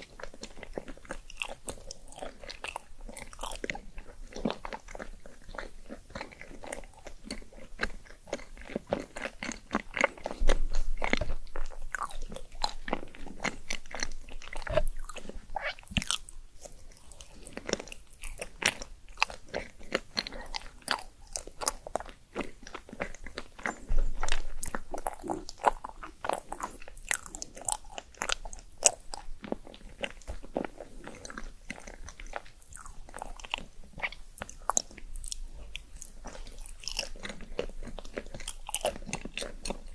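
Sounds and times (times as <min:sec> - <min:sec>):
close-miked chewing and crunching: 0:00.0 - 0:39.9.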